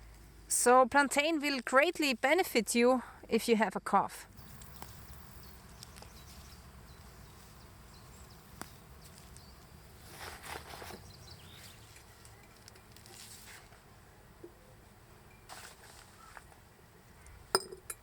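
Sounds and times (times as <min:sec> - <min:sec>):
brief rustles: 0:09.1 - 0:13.8.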